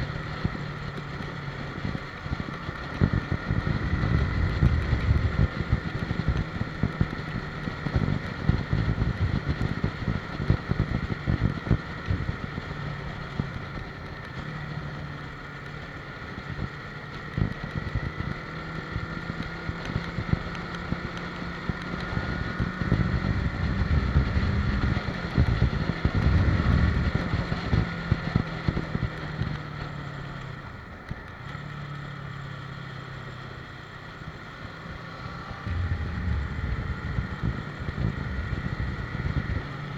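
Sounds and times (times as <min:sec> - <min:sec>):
motorcycle engine cruising: 0:00.0 - 0:39.9
wind buffeting microphone: 0:03.0 - 0:07.0, 0:35.4 - 0:39.9.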